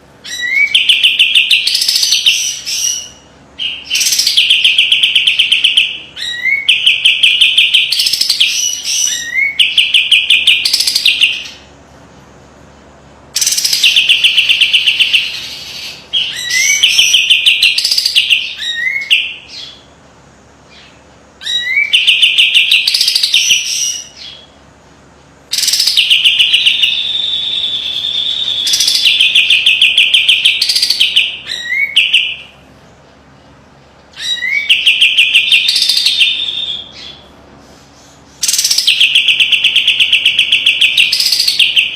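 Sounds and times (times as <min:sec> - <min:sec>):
songbird buzzy trills: 0:13.3 - 0:24.7, 0:25.5 - 0:41.9.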